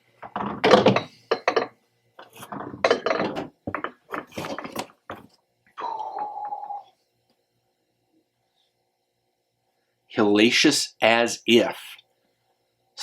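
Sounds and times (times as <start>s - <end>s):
beer cans knocking and rattling: 0.2s - 5.3s.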